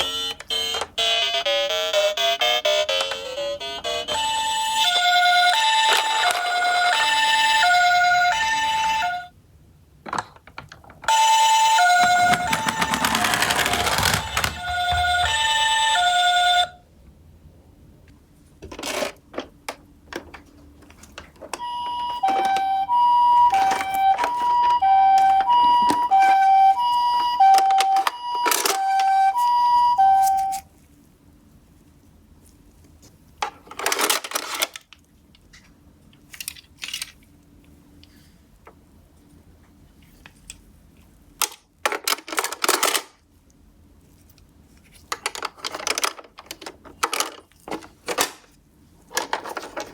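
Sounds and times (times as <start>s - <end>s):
two-tone ambulance siren: 3.8s - 9.3s, 11.1s - 16.8s, 21.6s - 30.6s
toy cars rolling on cardboard: 11.2s - 15.9s, 49.1s - 49.9s.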